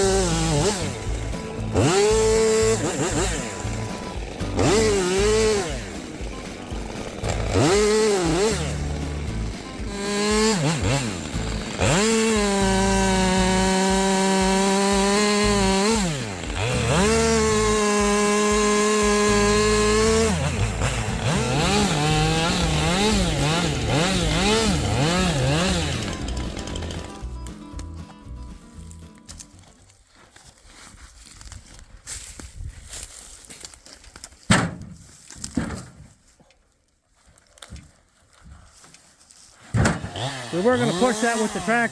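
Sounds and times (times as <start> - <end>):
chainsaw cutting wood: 0.0 - 28.1, 39.6 - 41.9.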